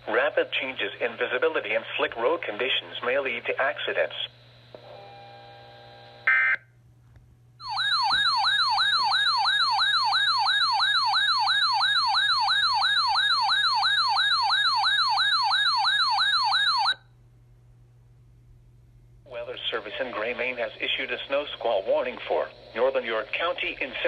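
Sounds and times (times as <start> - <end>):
faint steady hum: 0.0 - 24.0
electronic yelp siren: 7.6 - 17.0.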